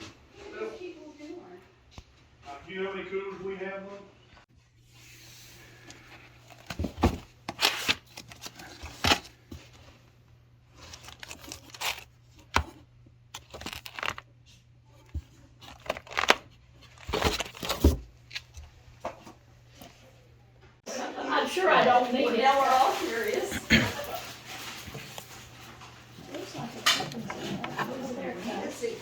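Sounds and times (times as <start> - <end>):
objects rustling and clattering: 4.9 - 20.2, 21.7 - 29.0.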